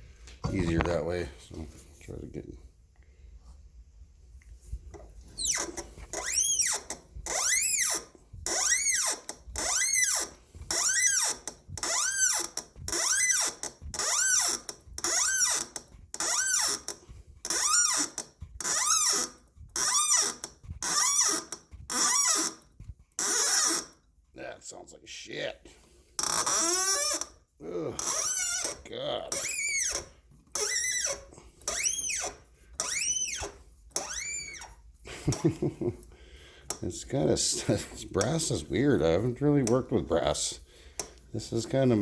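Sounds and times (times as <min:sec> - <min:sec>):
thread tap squealing in metal: 0:05.3 - 0:22.6, 0:23.2 - 0:24.0, 0:26.2 - 0:27.4, 0:28.0 - 0:34.8.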